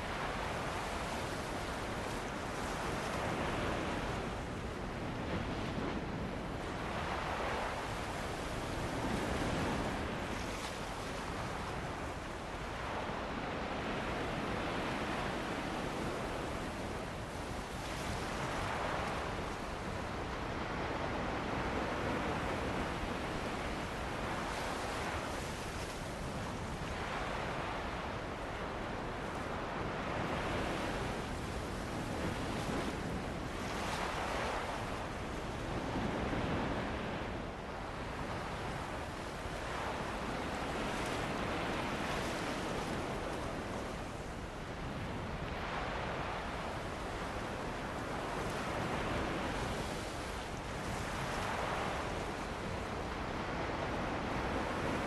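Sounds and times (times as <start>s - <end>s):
ocean waves breaking: 0.0s - 55.0s.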